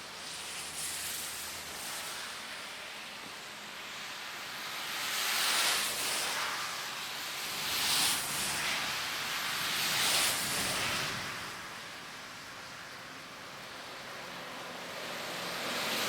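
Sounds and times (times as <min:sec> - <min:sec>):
tyres hissing on wet road: 0:00.0 - 0:16.0.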